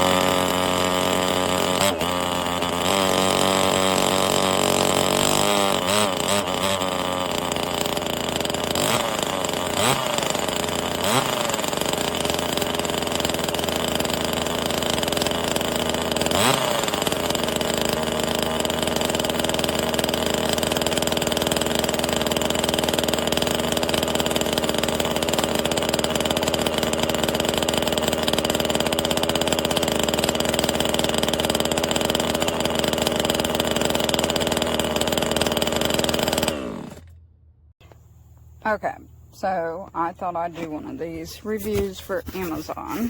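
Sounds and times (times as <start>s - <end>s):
chainsaw engine running: 0.0s - 43.0s.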